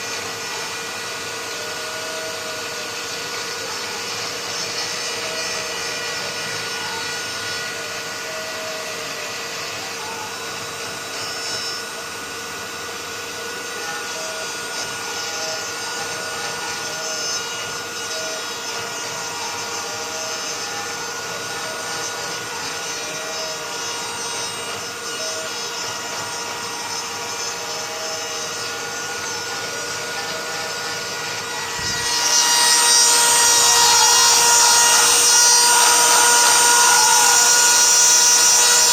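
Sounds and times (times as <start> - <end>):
mill spindle whine: 0.0 - 38.9
stepper motor pitch sweeps: 14.1 - 38.9.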